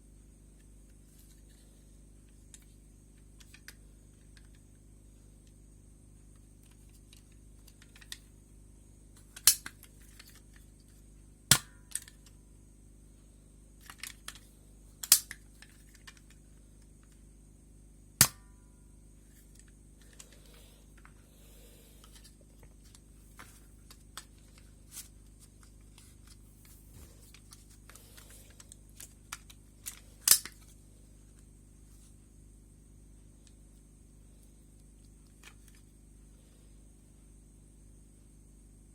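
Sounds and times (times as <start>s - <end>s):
toy blaster firing snaps: 15.0s - 15.4s, 18.2s - 18.5s, 30.2s - 30.6s.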